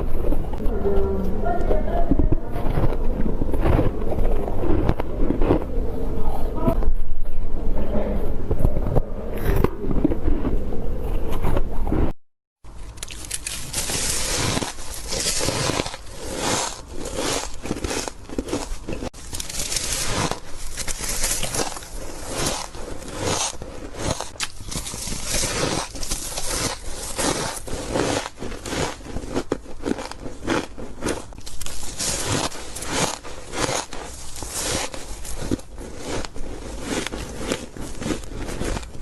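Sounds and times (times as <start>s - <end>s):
person crunching ice: 2.6s - 5.8s, 12.7s - 39.0s.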